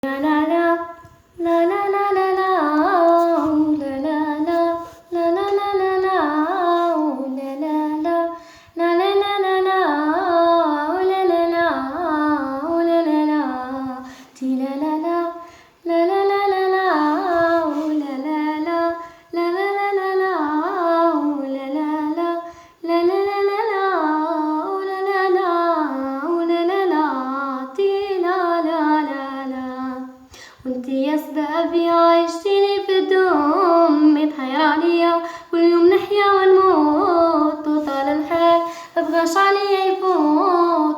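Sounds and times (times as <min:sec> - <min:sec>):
woman singing unaccompanied: 0:00.0 - 0:40.9
singer breathing: 0:08.4 - 0:08.8, 0:14.0 - 0:14.4, 0:30.3 - 0:30.7, 0:38.6 - 0:39.0.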